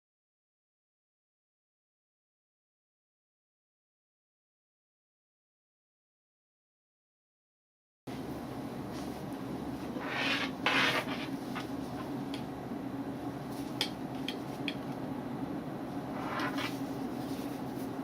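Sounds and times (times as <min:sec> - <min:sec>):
steady low hum: 0:08.1 - 0:18.0
small objects rubbing and scraping: 0:10.0 - 0:11.3, 0:16.1 - 0:17.9.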